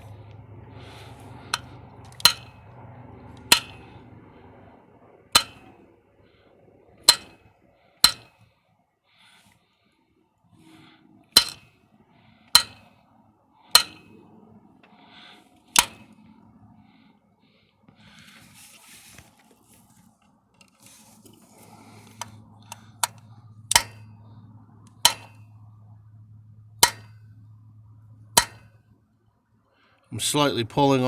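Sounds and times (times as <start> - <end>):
pliers knocking on engine block: 0.0 - 4.0, 5.4 - 5.7, 7.1 - 8.5, 11.4 - 11.7, 12.6 - 13.0, 13.7 - 14.2, 15.7 - 16.2, 22.2 - 24.1, 24.9 - 25.6, 26.8 - 27.3, 28.4 - 28.8.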